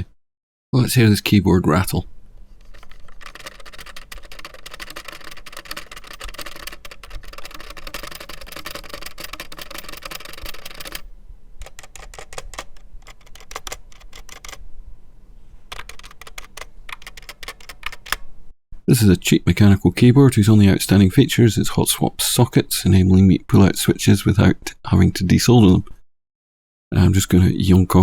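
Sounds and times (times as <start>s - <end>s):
keys rattling: 2.6s - 14.6s
mechanical keyboard typing: 2.6s - 14.6s, 15.7s - 18.2s.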